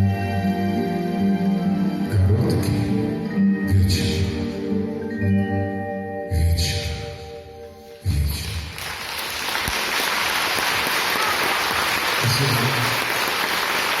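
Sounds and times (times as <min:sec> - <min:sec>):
audience applause: 0:08.5 - 0:14.0.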